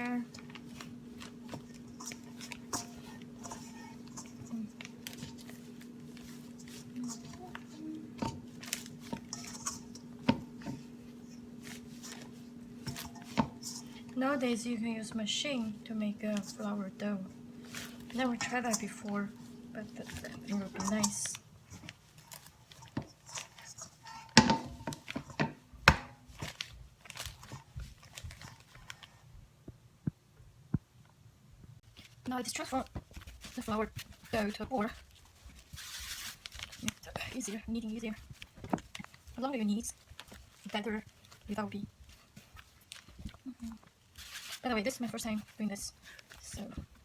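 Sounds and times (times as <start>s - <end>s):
steady low hum: 0.0s - 26.4s
dough squishing by hand: 0.0s - 31.0s, 31.8s - 47.0s
clicks and knocks against bowl: 0.3s - 14.2s, 17.3s - 26.6s.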